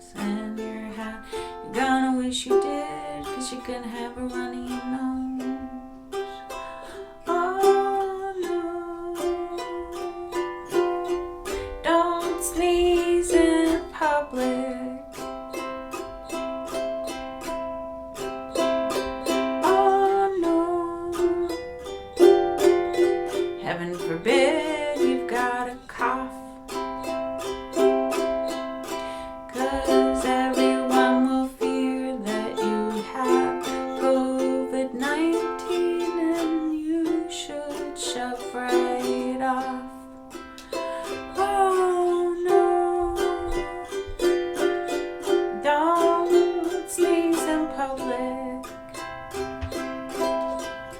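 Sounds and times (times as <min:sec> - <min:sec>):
ukulele strumming: 0:00.0 - 0:50.9.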